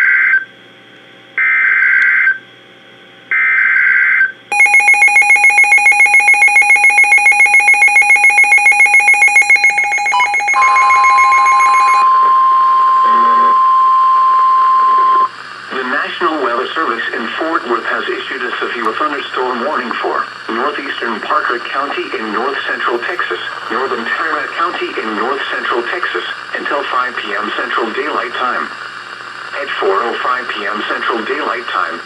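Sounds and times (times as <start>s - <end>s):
steady warning alarm tone: 3.3s - 15.3s
rapid electronic beeping: 4.5s - 15.3s.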